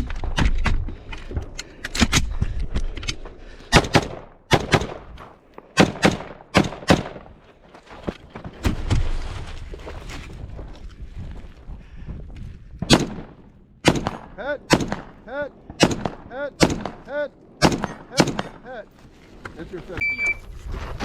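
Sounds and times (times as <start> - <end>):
rifle shots: 3.7 - 7.3, 12.8 - 18.7.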